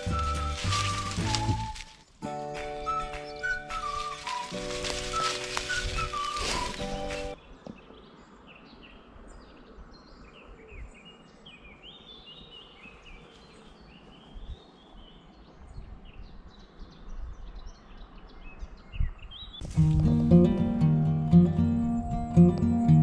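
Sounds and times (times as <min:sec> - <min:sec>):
songbirds chirping and singing: 0:00.0 - 0:02.0, 0:02.9 - 0:23.0
acoustic guitar music: 0:00.0 - 0:07.4, 0:19.6 - 0:23.0
faint outdoor hiss: 0:03.2 - 0:23.0
soft low thumps: 0:19.6 - 0:23.0.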